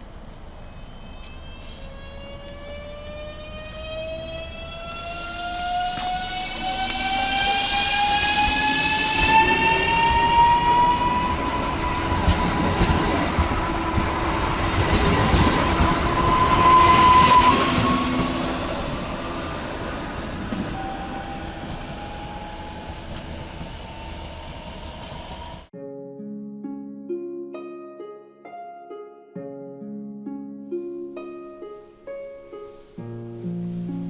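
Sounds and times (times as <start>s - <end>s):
electric train motor whine: 0.7s - 12.3s
hiss: 4.9s - 9.4s.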